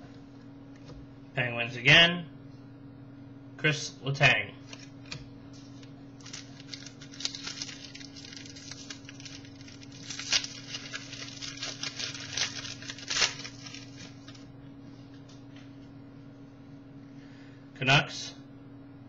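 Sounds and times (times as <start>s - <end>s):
low electrical hum: 0.0s - 19.0s
trading cards clicking and rustling: 6.2s - 14.4s.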